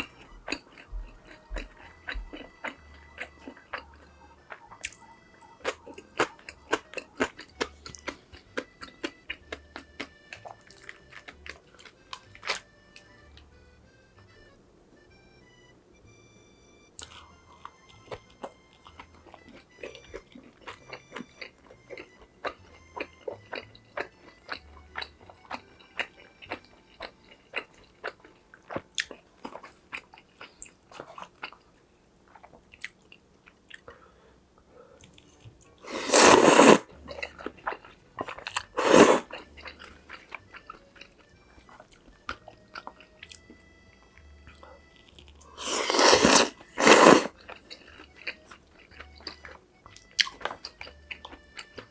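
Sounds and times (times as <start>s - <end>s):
close chewing with wet clicks: 0.0s - 13.1s, 17.0s - 34.0s, 35.0s - 51.9s
loud noisy mouthfuls: 35.9s - 36.8s, 38.8s - 39.3s, 45.5s - 47.3s.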